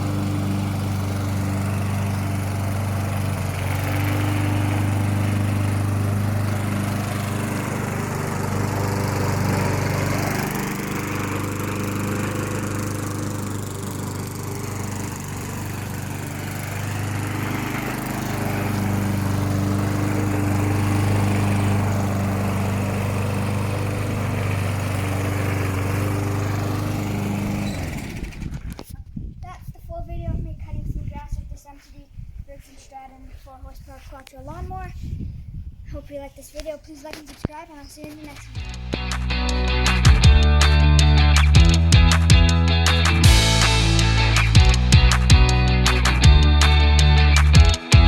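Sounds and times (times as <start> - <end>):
lawn mower engine cutting grass: 0.0 - 29.0, 37.1 - 48.0.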